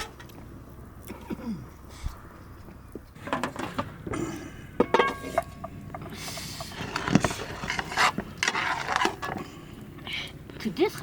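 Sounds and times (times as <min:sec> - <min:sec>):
metal cookware clinking and scraping: 0:04.8 - 0:09.4.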